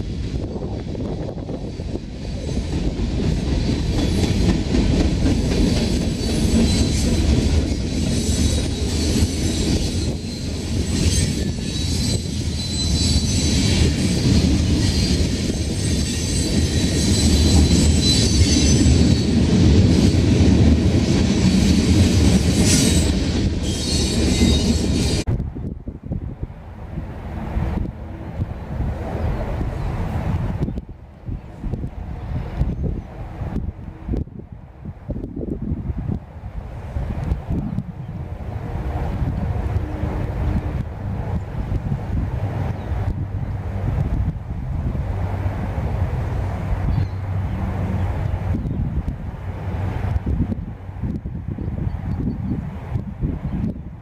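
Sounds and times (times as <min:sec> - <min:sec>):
train wheels rumbling on rails: 0:00.0 - 0:54.0
high-pitched wheel squeal: 0:06.1 - 0:19.3, 0:22.7 - 0:25.2.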